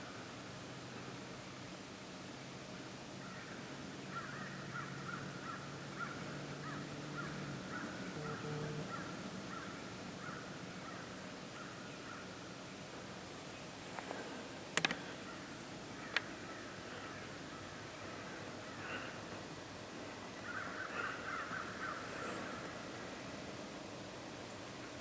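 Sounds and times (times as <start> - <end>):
crows cawing: 3.2 - 12.2, 14.9 - 19.4, 20.4 - 22.8
low hum: 4.6 - 25.0.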